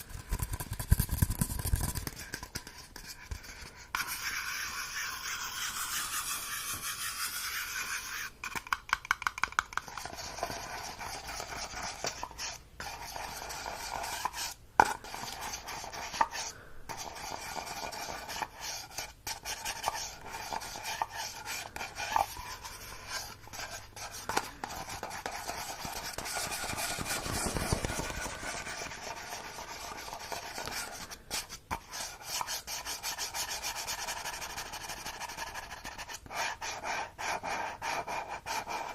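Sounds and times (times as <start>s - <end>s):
rubbing and scratching: 0.0s - 38.9s
sharp taps and ticks: 8.5s - 10.1s.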